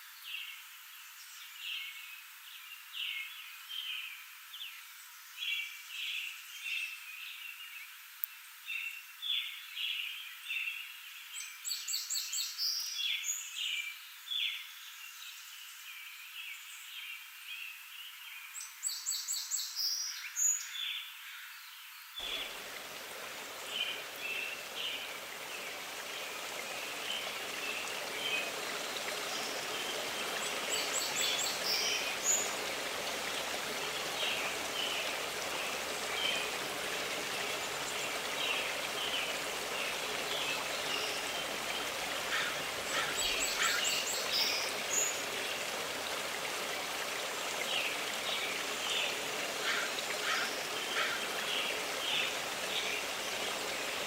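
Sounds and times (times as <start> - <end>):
songbirds chirping: 0.2 - 54.0
stream water rushing: 22.2 - 54.0.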